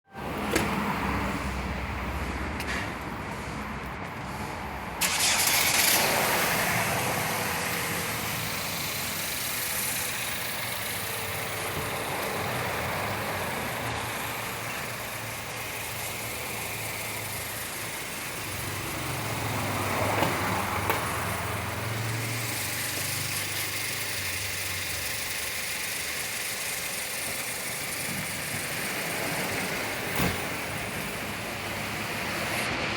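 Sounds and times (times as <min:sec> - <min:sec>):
car engine running: 0:05.0 - 0:32.8.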